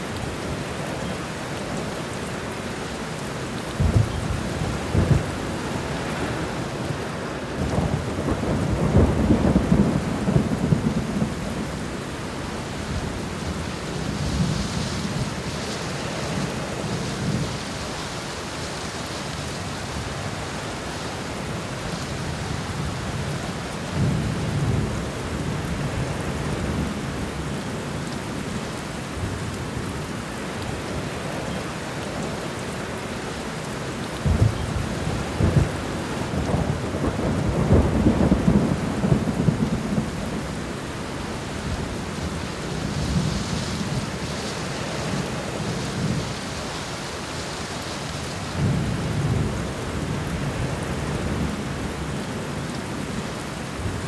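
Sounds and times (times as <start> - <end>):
steady rain falling: 0.0 - 54.0
thunder rumbling: 3.7 - 17.7, 34.2 - 46.6.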